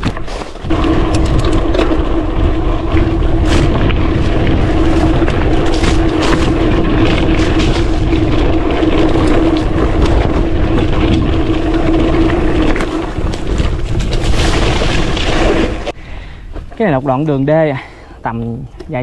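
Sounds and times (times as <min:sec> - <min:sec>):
tyres on rough dirt: 0:00.0 - 0:17.8
wind buffeting microphone: 0:00.0 - 0:19.0.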